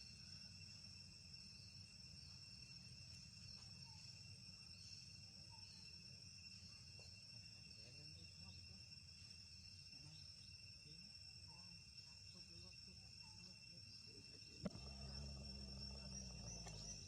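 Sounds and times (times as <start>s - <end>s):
insects droning: 0.0s - 17.0s
low rumble: 14.7s - 17.0s.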